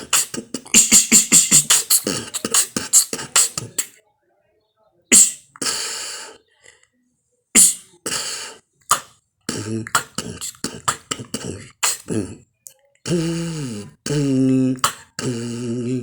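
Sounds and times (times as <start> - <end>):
person beatboxing: 0.0 - 4.0, 5.1 - 5.9, 7.6 - 12.4, 13.1 - 16.0
person humming a tone: 13.1 - 16.0.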